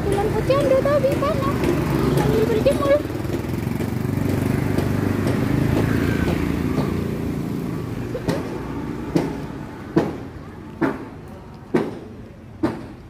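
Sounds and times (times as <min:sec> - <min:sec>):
vehicle engine passing by: 0:00.0 - 0:10.8
sharp taps: 0:00.4 - 0:07.0.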